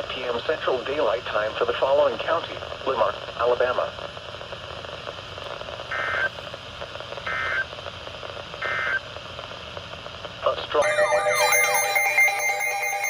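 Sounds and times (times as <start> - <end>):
radio hiss: 0.0 - 10.8
warbling digital data tones: 10.8 - 13.0.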